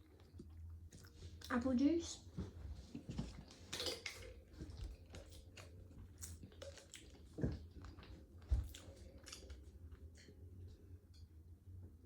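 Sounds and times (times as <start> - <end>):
person chewing food: 0.0 - 1.5, 2.4 - 10.5.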